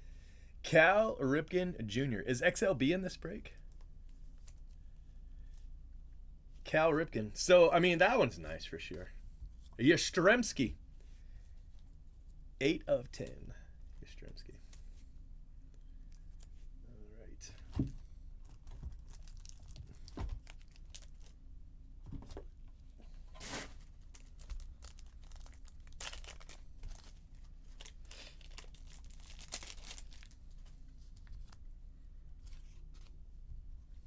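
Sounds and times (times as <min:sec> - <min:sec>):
packaging torn and crinkled: 0:18.4 - 0:21.4, 0:23.4 - 0:31.6.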